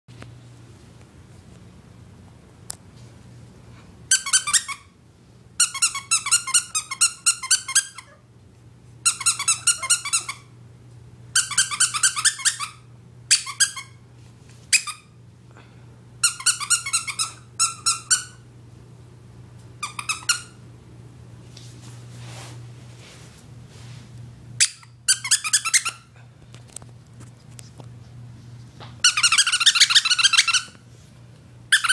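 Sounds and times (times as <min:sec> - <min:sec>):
squeaky dog toy squeaking: 0:04.1 - 0:04.9, 0:05.6 - 0:08.2, 0:09.0 - 0:10.5, 0:11.3 - 0:14.0, 0:14.7 - 0:15.2, 0:16.2 - 0:18.4, 0:19.8 - 0:20.6, 0:24.6 - 0:26.1, 0:29.0 - 0:30.7.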